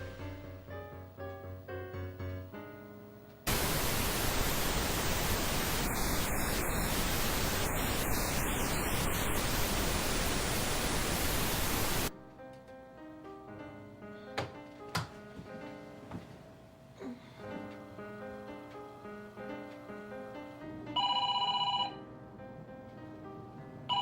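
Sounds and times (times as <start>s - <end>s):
loud static hiss: 3.5s - 12.1s.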